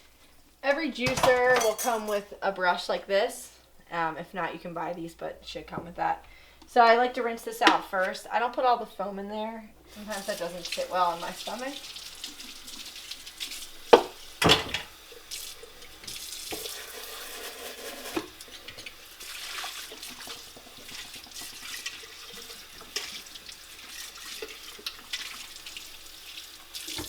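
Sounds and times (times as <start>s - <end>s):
plastic parts knocking on sink: 1.0s - 2.1s, 13.9s - 14.9s
tap running into a sink: 12.2s - 27.0s.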